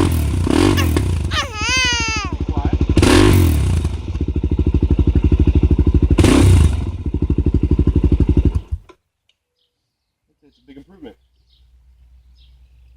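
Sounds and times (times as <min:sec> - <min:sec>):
motorcycle engine idling and revving: 0:02.4 - 0:08.9.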